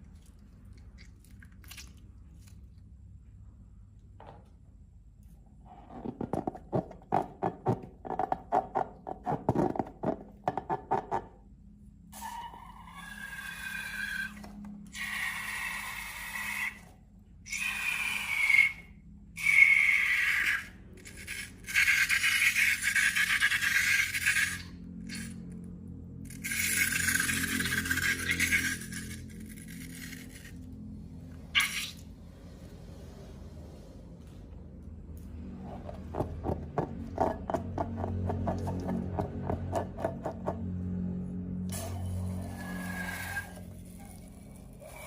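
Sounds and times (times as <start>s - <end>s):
slime squishing: 0.0s - 3.0s
rubber balloon squealing: 31.5s - 32.0s.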